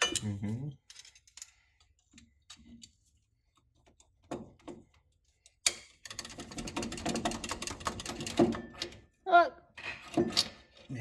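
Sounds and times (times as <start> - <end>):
hand tools clicking and tapping: 0.9 - 9.0.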